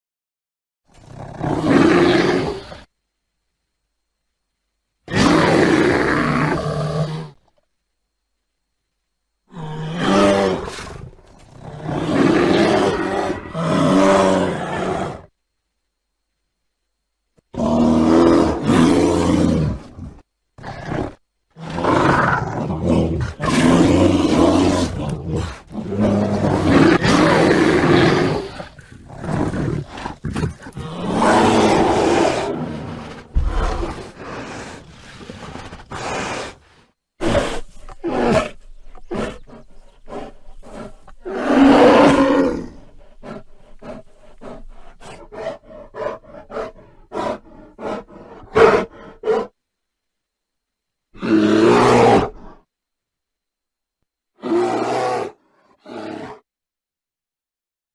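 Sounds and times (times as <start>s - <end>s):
bear roaring and growling: 1.0s - 2.9s, 5.1s - 7.4s, 9.5s - 15.3s, 17.5s - 49.6s, 51.2s - 52.7s, 54.4s - 56.5s.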